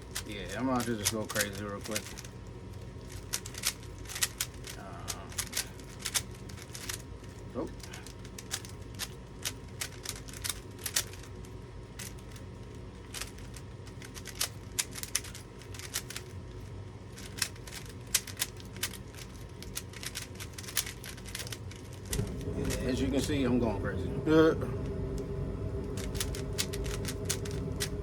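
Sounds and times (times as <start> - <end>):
puzzle cube clicking: 0.1 - 2.3, 3.0 - 11.4, 13.1 - 16.3, 17.2 - 22.8, 26.0 - 28.0.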